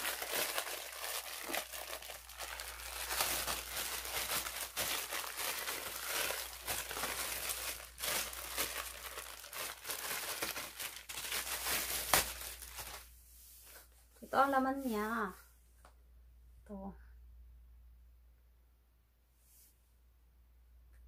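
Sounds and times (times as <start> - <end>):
packaging crinkling and tearing: 0.0 - 13.1.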